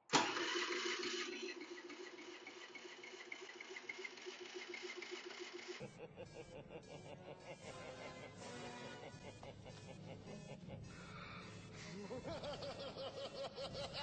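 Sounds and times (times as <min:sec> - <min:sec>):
generator starter cranking: 0:00.1 - 0:05.8.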